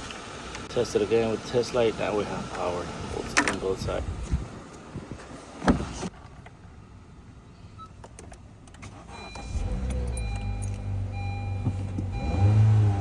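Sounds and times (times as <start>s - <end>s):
car engine starting and idling: 5.5s - 13.0s.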